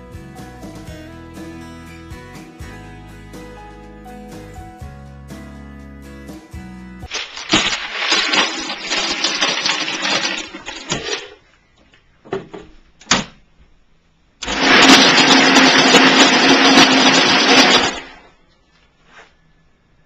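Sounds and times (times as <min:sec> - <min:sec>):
ice shaving machine grinding: 0:07.4 - 0:11.4, 0:14.4 - 0:18.3.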